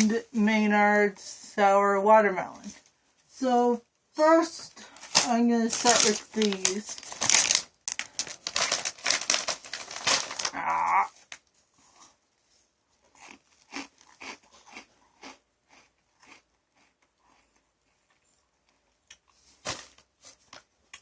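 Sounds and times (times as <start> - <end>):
plastic snack bag crinkling: 4.8 - 11.5.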